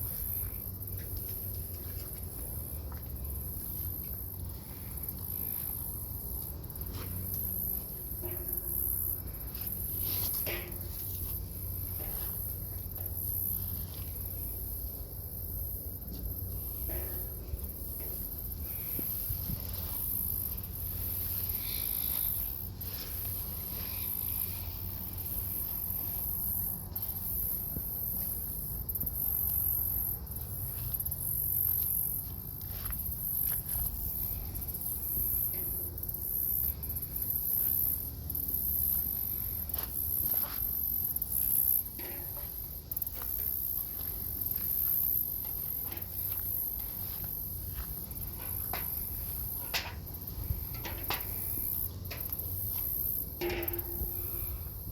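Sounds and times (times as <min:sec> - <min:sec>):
insects chirring: 0:00.0 - 0:54.9
light rustles or steps: 0:06.4 - 0:15.0.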